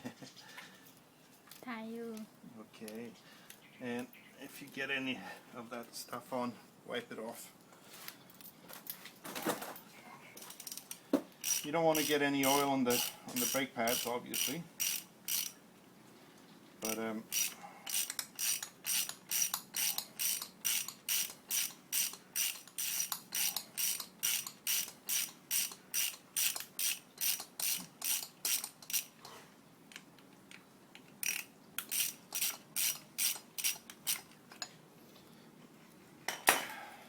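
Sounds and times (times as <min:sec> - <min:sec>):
ratchet wrench clicking: 0:10.6 - 0:15.6, 0:16.8 - 0:29.2, 0:31.2 - 0:34.3.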